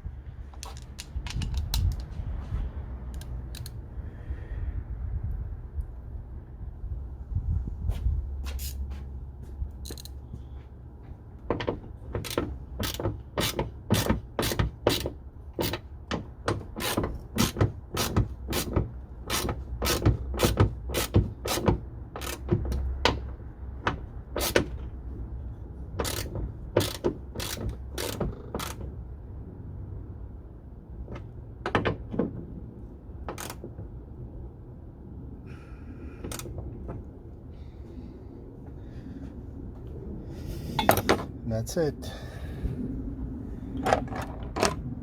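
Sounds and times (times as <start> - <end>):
ratchet wrench clicking: 3.1 - 3.8, 9.8 - 10.2, 12.2 - 15.8, 26.0 - 28.8.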